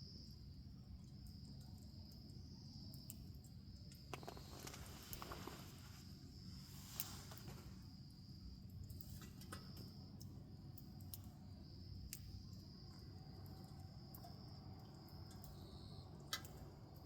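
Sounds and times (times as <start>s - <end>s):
insects trilling: 0.0s - 17.0s
bonfire crackling and popping: 2.9s - 15.6s, 16.2s - 17.0s.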